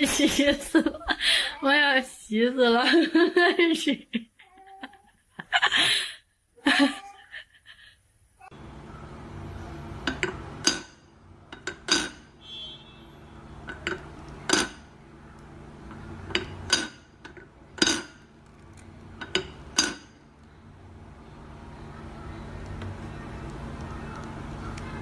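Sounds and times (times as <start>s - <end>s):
metal dishware clanking: 11.6s - 12.3s, 13.7s - 14.8s, 16.3s - 18.2s, 19.2s - 20.2s.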